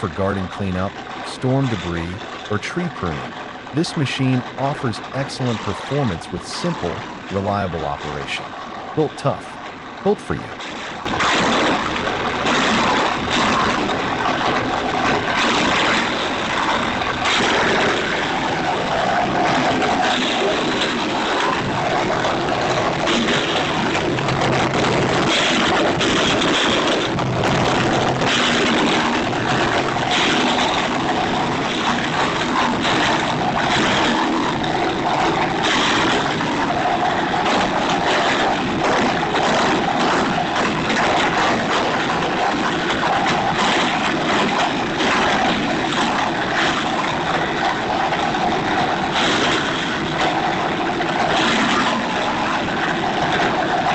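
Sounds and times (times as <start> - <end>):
wood chipper grinding: 0.0 - 53.9.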